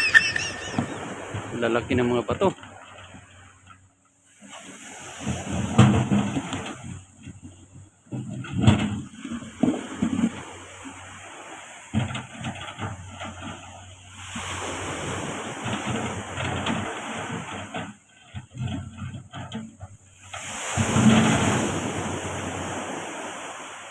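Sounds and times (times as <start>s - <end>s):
backhoe engine humming: 0.0s - 1.6s.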